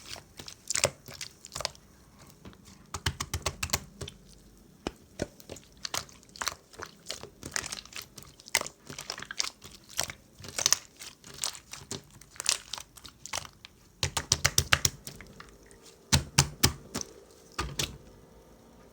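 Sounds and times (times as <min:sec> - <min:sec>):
keyboard typing: 0:14.0 - 0:18.1.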